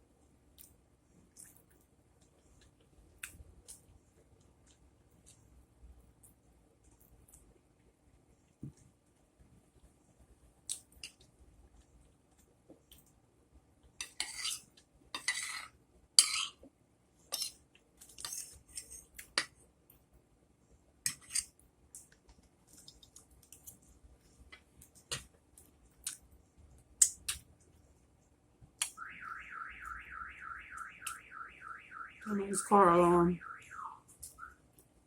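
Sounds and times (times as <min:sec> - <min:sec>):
cutlery scraping a plate: 0:14.0 - 0:16.6, 0:17.3 - 0:17.6, 0:18.2 - 0:19.5, 0:21.1 - 0:21.5
car alarm warbling: 0:28.9 - 0:34.6.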